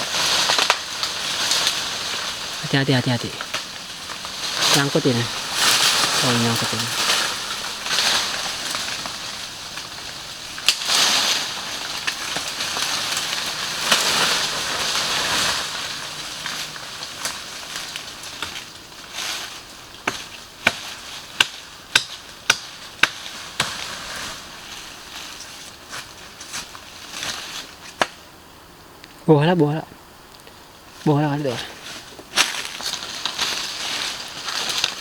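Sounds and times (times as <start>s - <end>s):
leaves and branches rustling: 0.0s - 35.0s
chopping into wood: 20.0s - 23.8s.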